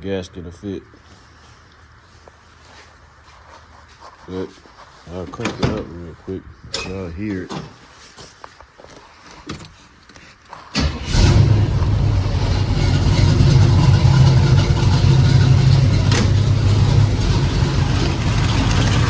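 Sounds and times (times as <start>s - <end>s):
vee eight engine cranking and idling: 10.7s - 19.0s
leaking exhaust ticking: 11.0s - 19.0s.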